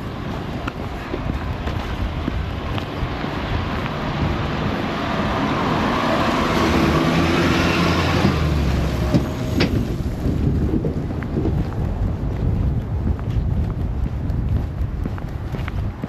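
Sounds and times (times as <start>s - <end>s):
road noise: 0.0s - 16.0s
vehicle engine hum: 0.0s - 16.0s
wind buffeting microphone: 0.0s - 16.0s.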